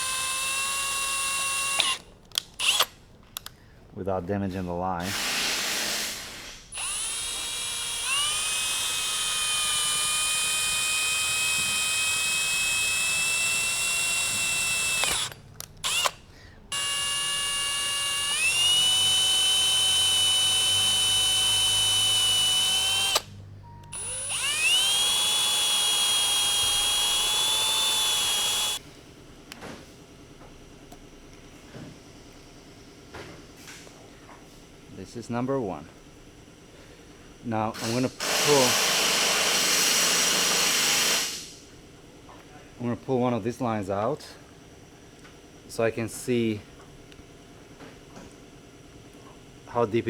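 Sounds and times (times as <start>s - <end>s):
power drill whining: 0.0s - 3.0s, 5.0s - 28.8s, 37.8s - 41.4s.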